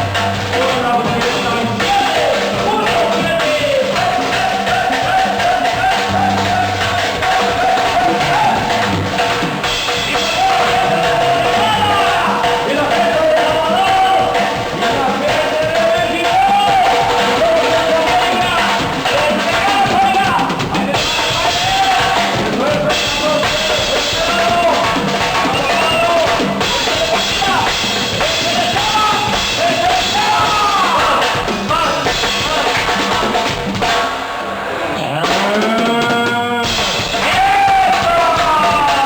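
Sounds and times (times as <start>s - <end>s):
band music with drum kit: 0.0s - 39.0s
pitch sweep: 5.3s - 13.2s.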